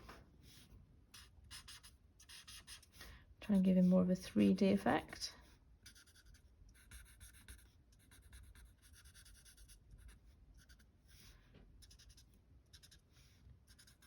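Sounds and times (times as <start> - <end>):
marker nib scratching on card: 0.5 - 3.0, 5.8 - 14.0.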